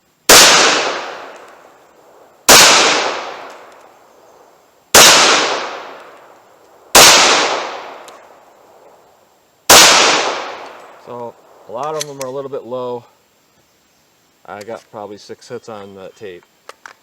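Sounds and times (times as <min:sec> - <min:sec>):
pistol shots: 0:00.3 - 0:01.6, 0:02.5 - 0:03.9, 0:04.9 - 0:06.2, 0:06.9 - 0:08.2, 0:09.7 - 0:10.9.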